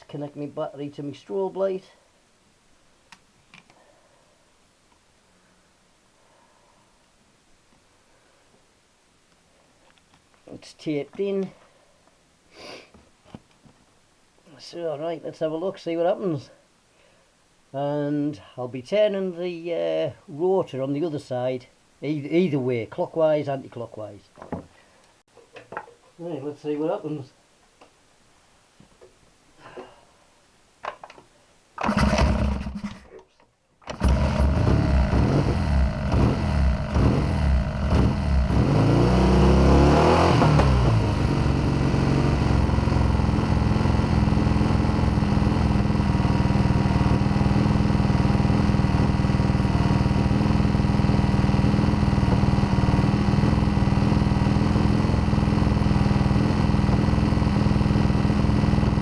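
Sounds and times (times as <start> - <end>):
motorcycle engine starting and running: 31.8 - 33.0, 33.9 - 59.0.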